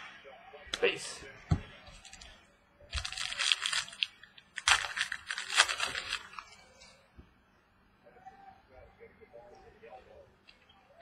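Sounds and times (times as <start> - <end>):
foil wrapper crinkling and tearing: 2.0 - 6.6.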